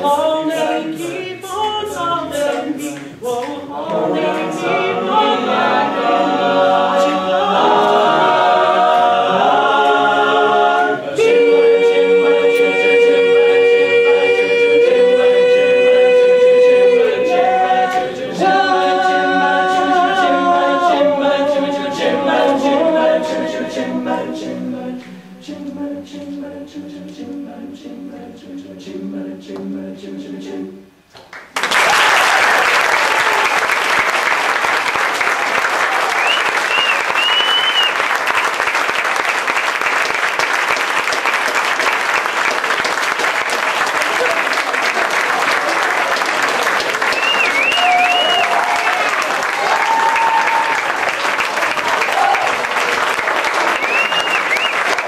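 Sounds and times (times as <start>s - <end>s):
a cappella group singing harmony: 0.0s - 31.0s.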